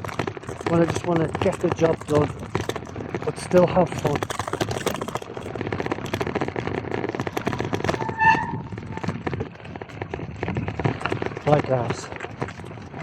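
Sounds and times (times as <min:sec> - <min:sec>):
bike rattling: 0:00.0 - 0:13.0.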